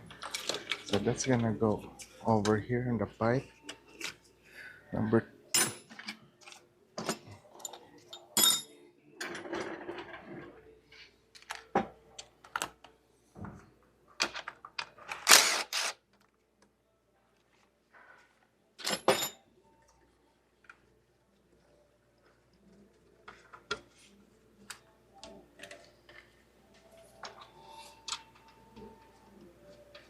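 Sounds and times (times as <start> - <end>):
tools and metal parts clinking: 5.6 - 10.2, 18.8 - 19.4.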